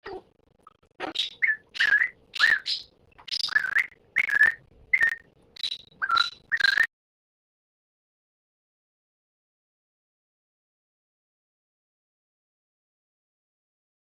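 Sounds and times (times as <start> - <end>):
parrot squawking: 1.0 - 6.9.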